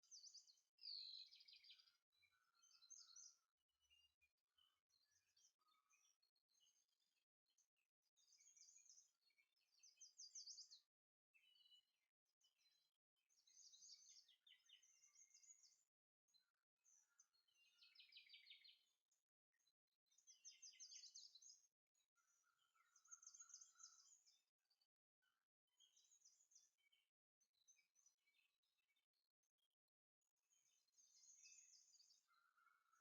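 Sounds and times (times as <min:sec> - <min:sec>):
faint birdsong trills: 0:00.0 - 0:33.0.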